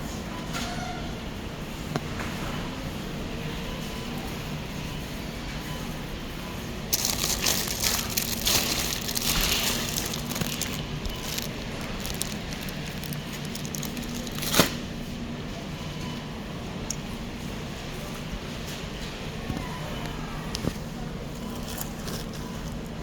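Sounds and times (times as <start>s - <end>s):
steady low hum: 1.2s - 23.0s
packaging crinkling: 6.9s - 14.8s.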